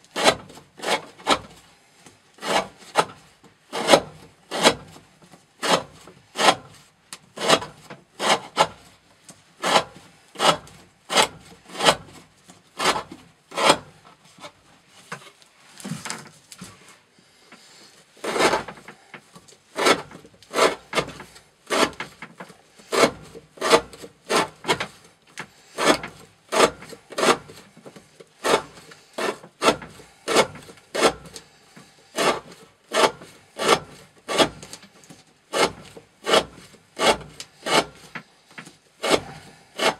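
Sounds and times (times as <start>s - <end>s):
knife slicing through rope: 9.6s - 12.0s, 12.8s - 13.9s, 18.2s - 19.0s, 19.8s - 22.2s, 22.9s - 25.0s, 28.4s - 31.4s, 32.2s - 38.2s, 39.0s - 39.9s.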